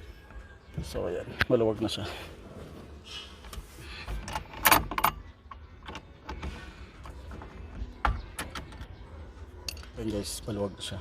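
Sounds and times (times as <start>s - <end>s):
metallic clinks and rattles: 9.6s - 10.2s.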